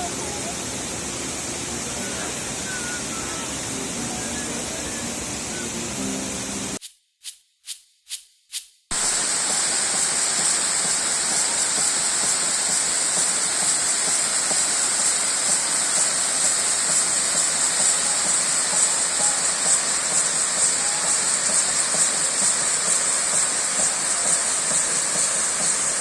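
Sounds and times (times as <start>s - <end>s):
waterfall rushing: 0.0s - 6.8s, 8.9s - 22.4s.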